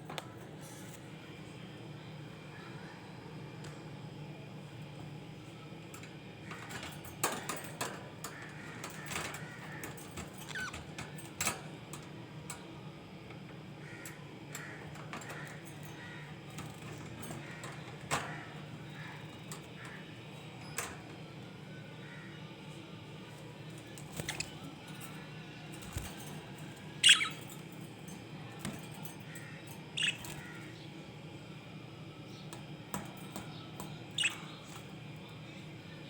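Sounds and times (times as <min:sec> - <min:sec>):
steady low hum: 0:00.0 - 0:36.0
budgies chirping and chattering: 0:10.4 - 0:10.8, 0:27.0 - 0:27.5, 0:30.0 - 0:30.8, 0:34.0 - 0:34.8.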